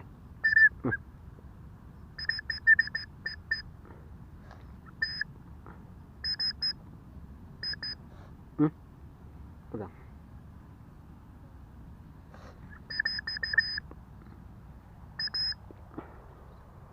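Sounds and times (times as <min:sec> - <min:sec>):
bird giving harsh calls: 0:00.4 - 0:00.9, 0:02.2 - 0:03.7, 0:04.8 - 0:05.3, 0:12.6 - 0:13.8.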